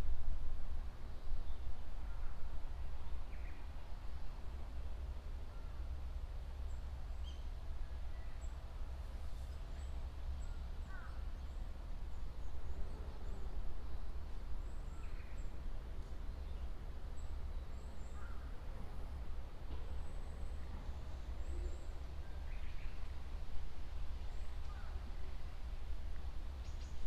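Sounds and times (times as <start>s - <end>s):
faint birdsong chirps: 5.5s - 23.3s, 23.9s - 27.0s.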